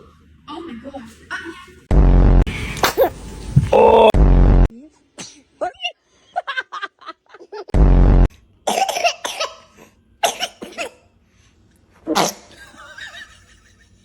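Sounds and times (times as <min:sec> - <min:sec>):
loud distorted blast: 0:01.9 - 0:02.6, 0:04.1 - 0:04.7, 0:07.7 - 0:08.3
baby sneezing: 0:02.8 - 0:03.2, 0:05.2 - 0:05.5, 0:12.1 - 0:12.5
baby coughing: 0:08.7 - 0:11.1, 0:12.1 - 0:12.5.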